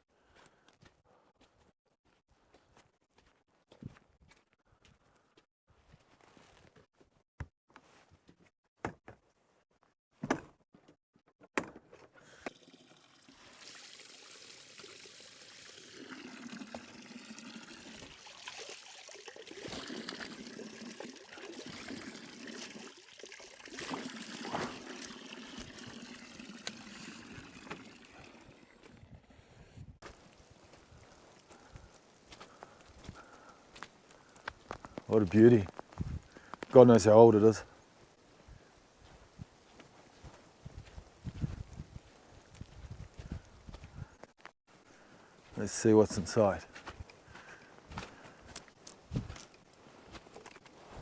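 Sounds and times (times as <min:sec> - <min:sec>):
spring water trickling and pouring: 0:12.4 - 0:29.1, 0:30.0 - 0:38.1, 0:45.6 - 0:47.5, 0:48.5 - 0:51.0.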